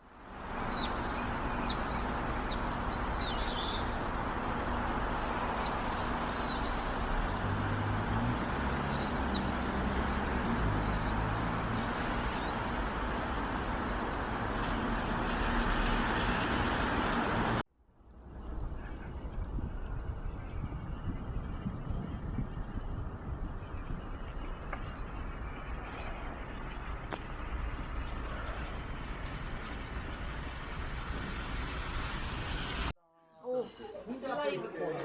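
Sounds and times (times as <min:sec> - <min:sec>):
small birds chirping: 0:00.0 - 0:13.0
outdoor background noise: 0:00.0 - 0:35.0.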